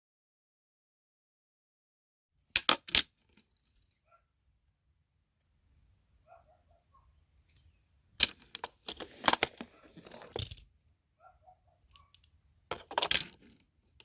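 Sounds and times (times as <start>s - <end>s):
toy pieces clattering: 2.6s - 3.8s, 8.2s - 10.7s, 11.9s - 14.0s.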